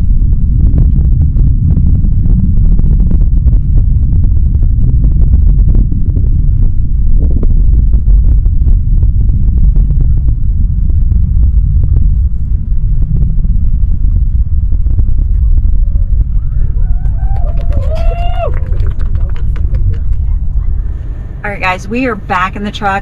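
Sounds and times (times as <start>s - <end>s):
rocket engines rumbling: 0.0s - 23.0s.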